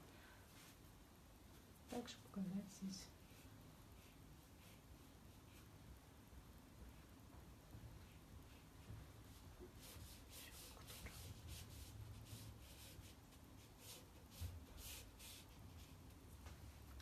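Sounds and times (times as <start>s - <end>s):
paintbrush swishing on paper: 3.1s - 5.9s, 8.0s - 16.6s.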